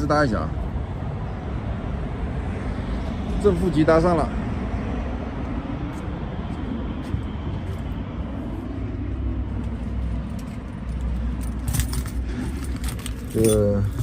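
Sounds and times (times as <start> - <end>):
low outdoor rumble: 0.0 - 14.0
keys jangling: 10.2 - 14.0.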